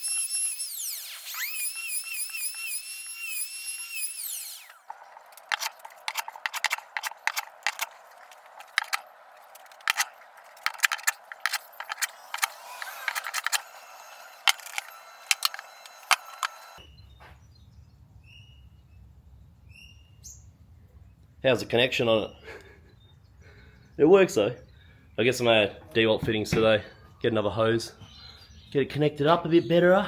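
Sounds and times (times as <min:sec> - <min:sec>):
high wavering whine: 0:00.0 - 0:04.9.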